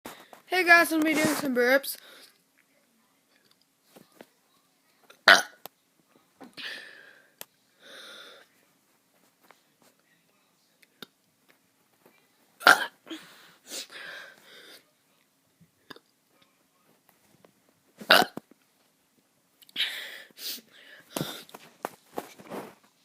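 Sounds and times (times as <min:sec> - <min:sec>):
child burping: 0:05.2 - 0:05.6, 0:12.6 - 0:13.1, 0:18.1 - 0:18.4.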